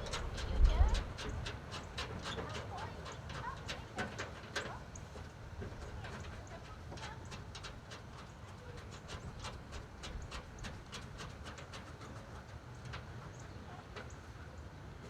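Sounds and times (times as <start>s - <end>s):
low background rumble: 0.0s - 1.5s.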